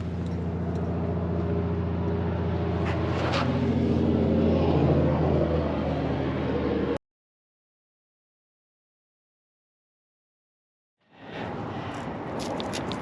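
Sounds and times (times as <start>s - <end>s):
vehicle engine droning: 0.0s - 7.0s.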